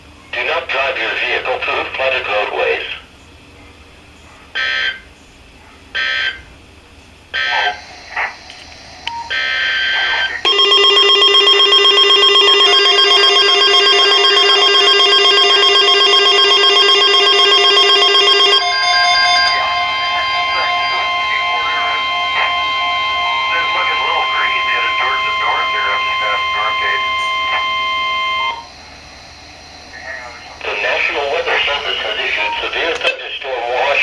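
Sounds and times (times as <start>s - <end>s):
pulsing electronic alarm: 4.6s - 5.0s, 6.0s - 6.5s, 7.4s - 32.9s
steady alarm tone: 7.4s - 32.9s
screeching data tone bursts: 9.2s - 32.8s.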